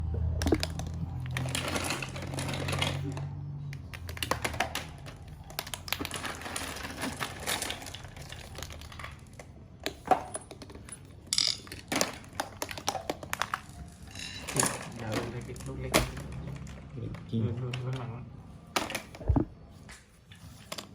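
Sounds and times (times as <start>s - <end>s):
toy car clicking and rattling: 0.4s - 19.2s
low hum: 19.2s - 19.7s.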